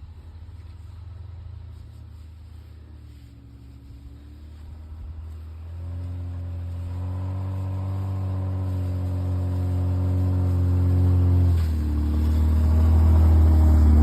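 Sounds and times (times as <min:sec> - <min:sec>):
vehicle engine humming: 0:00.0 - 0:14.0.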